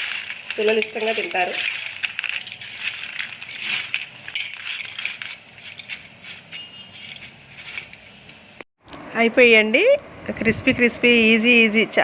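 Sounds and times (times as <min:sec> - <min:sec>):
french fries crunching: 0:00.0 - 0:08.0.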